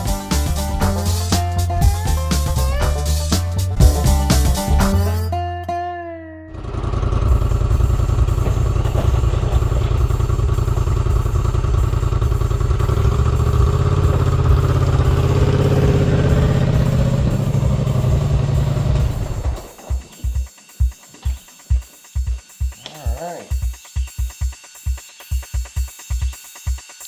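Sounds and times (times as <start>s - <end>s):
atv engine running: 0.0s - 5.3s, 6.5s - 20.1s.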